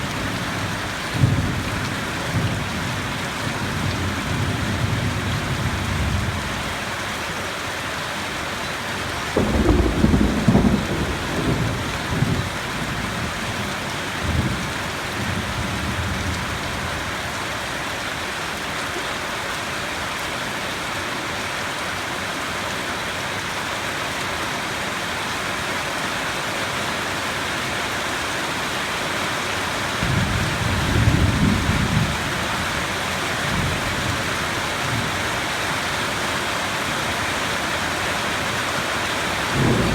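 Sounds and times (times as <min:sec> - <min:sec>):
heavy rain: 0:00.0 - 0:39.9
thunder rumbling: 0:09.4 - 0:16.4, 0:30.0 - 0:32.8, 0:39.6 - 0:39.9.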